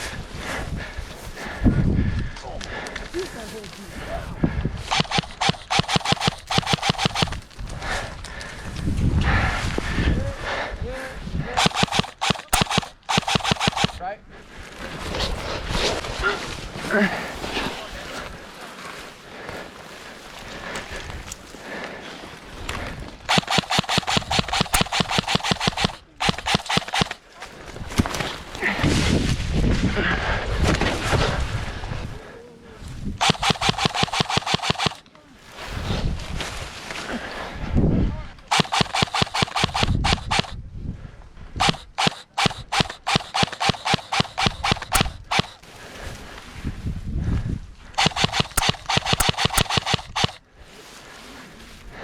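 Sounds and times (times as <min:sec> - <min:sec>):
airsoft gun firing bursts: 0:04.8 - 0:07.5, 0:11.6 - 0:14.1, 0:23.3 - 0:27.3, 0:33.2 - 0:35.1, 0:38.5 - 0:40.6, 0:41.6 - 0:45.7, 0:48.0 - 0:50.4.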